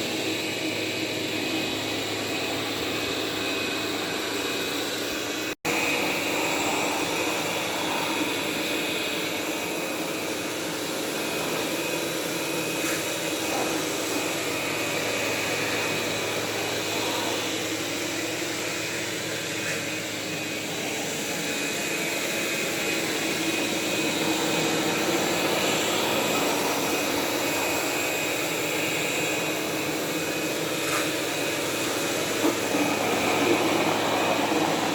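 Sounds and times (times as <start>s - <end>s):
robot vacuum whirring: 0.0s - 34.9s.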